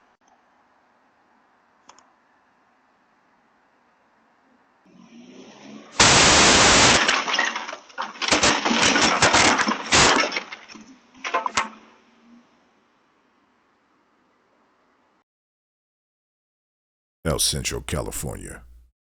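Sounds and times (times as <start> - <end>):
loud crash: 6.0 - 10.6
ragged crashing and crackling: 6.0 - 11.9.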